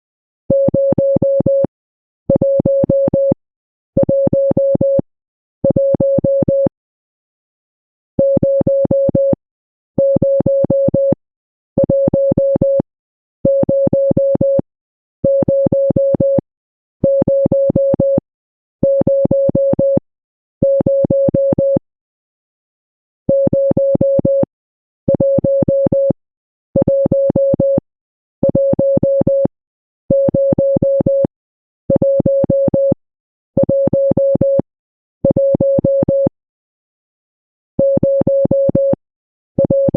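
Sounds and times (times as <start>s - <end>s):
morse code beeps: 17.0s - 18.2s, 23.3s - 24.5s, 26.8s - 27.8s, 30.1s - 31.3s, 33.6s - 34.6s, 37.8s - 39.0s, 39.6s - 39.9s.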